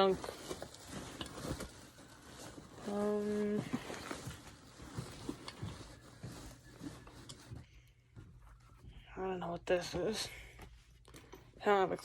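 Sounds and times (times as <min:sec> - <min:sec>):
rummaging in a backpack: 0:00.0 - 0:07.7.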